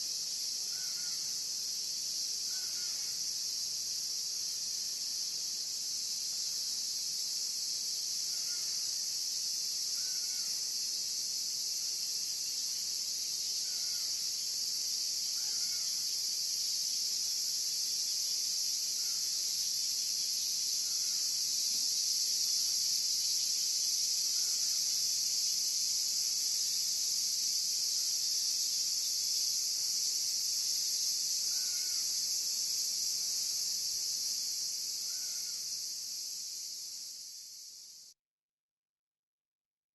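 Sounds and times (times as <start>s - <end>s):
high insect chorus: 0.0s - 38.2s.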